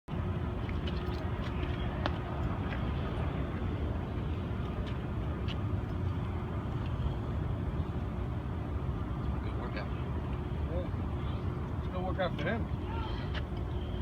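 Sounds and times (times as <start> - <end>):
traffic rumble: 0.1 - 14.0.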